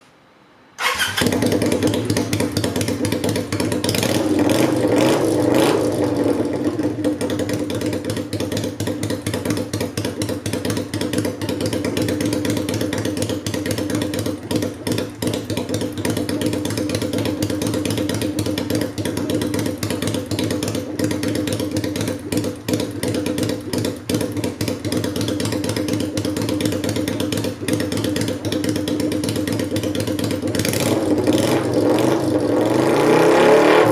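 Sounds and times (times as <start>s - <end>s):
motorcycle engine idling: 0.8s - 32.5s.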